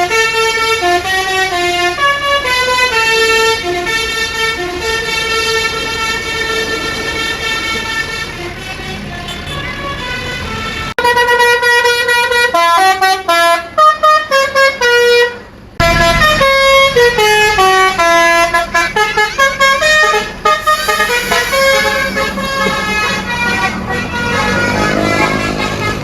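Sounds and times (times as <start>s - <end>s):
bus multi-tone horn tune: 0.0s - 26.0s.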